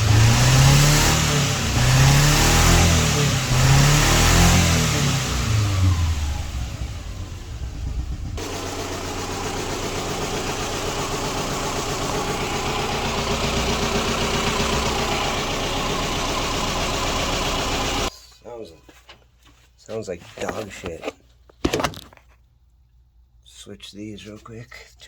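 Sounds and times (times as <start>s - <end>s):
car engine idling roughly: 0.0s - 18.1s.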